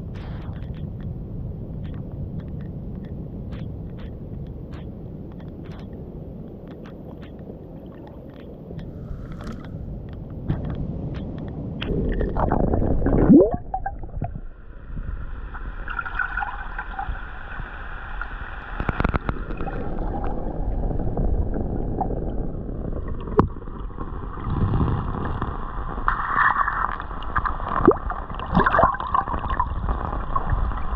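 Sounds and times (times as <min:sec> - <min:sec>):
low rumble: 0:06.4 - 0:26.1
water gurgling and splashing: 0:11.8 - 0:30.9.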